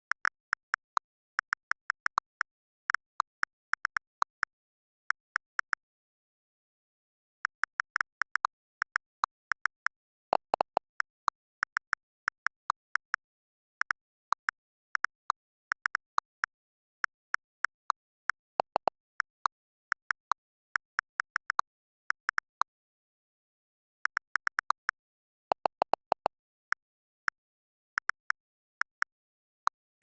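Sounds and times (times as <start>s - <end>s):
phone keyboard clicks: 0.0s - 5.9s, 7.1s - 22.7s.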